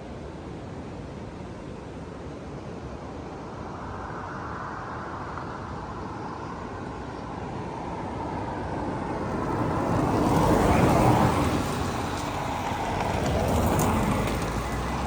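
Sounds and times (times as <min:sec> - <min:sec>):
car passing by: 0:03.8 - 0:15.0.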